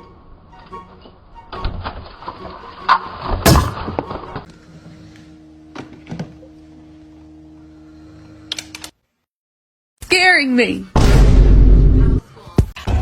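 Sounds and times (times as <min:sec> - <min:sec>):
sharp bang: 0:03.4 - 0:04.0.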